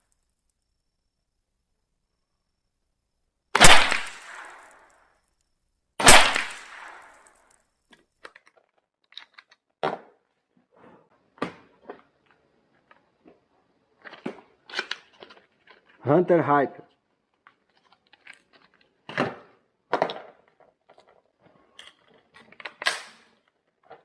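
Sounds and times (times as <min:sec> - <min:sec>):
rifle shots with echo: 0:03.6 - 0:04.7, 0:06.0 - 0:07.1.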